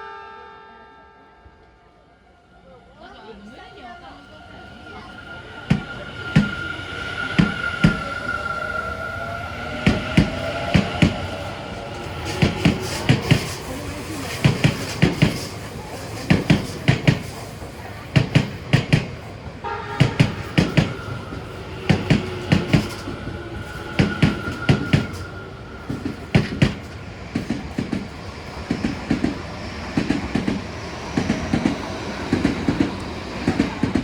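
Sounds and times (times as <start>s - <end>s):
train wheels clattering over rail joints: 9.8s - 19.3s, 21.8s - 34.0s.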